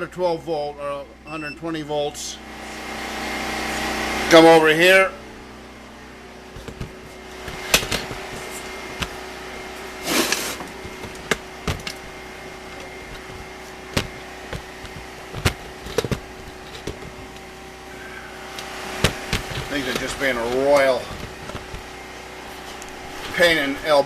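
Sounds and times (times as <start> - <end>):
generator humming: 0.0 - 24.0
equipment clicks and knocks: 6.6 - 9.2, 10.3 - 12.2, 12.8 - 17.5, 19.0 - 21.9
rustling scrape: 6.6 - 17.4, 18.8 - 23.6.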